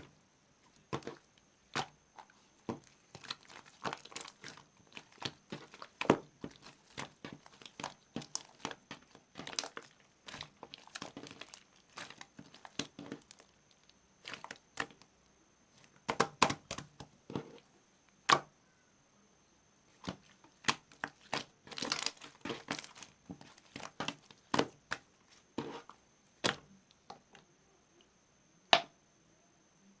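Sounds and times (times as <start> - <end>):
slime crackling and popping: 0.9 - 15.0, 16.0 - 17.6, 20.1 - 25.8.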